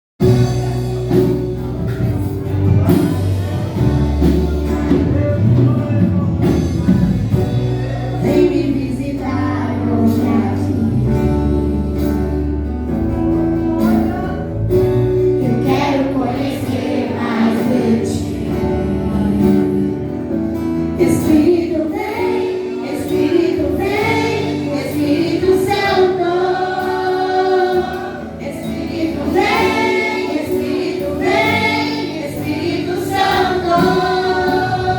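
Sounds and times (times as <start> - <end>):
low bass notes: 0.2 - 22.1
voices singing gospel song: 2.9 - 12.7, 13.7 - 34.9.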